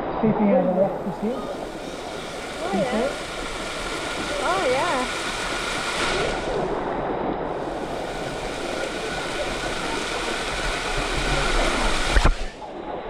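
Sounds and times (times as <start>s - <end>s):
waterfall rushing: 0.7s - 6.8s, 7.6s - 12.6s.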